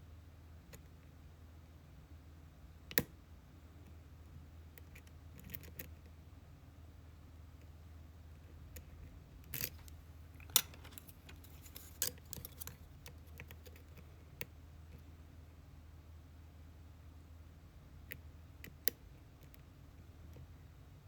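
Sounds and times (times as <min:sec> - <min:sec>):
low steady hum: 0:00.0 - 0:21.0
lock pick metallic clicks: 0:09.5 - 0:12.8.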